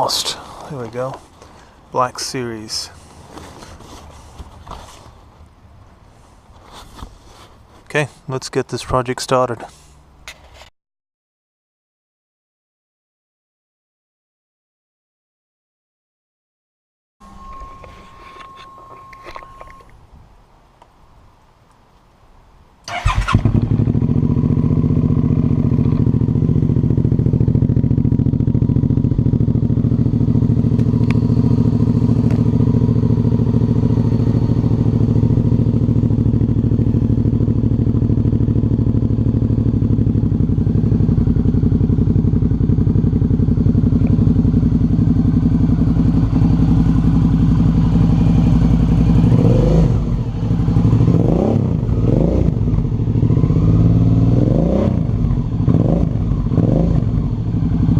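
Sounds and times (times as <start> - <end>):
motorcycle engine idling and revving: 0.0 - 8.0, 17.2 - 19.9, 22.9 - 57.9.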